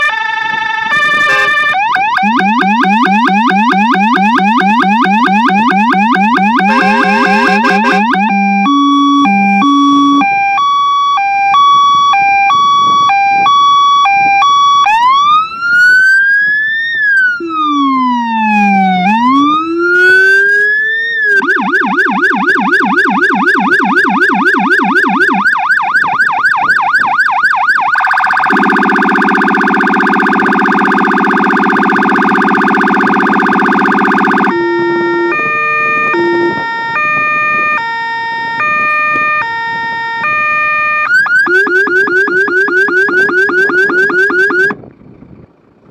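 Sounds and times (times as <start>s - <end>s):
fire engine electronic siren: 0.0s - 44.8s.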